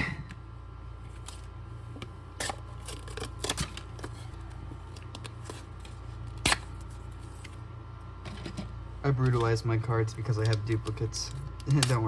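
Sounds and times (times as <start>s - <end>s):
steady low hum: 0.0s - 12.0s
cards clicking and crinkling: 1.1s - 7.6s, 9.2s - 12.0s.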